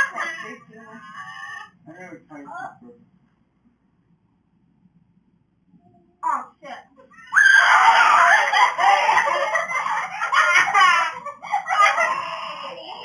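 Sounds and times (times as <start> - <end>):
person shrieking and wailing: 7.2 - 13.0.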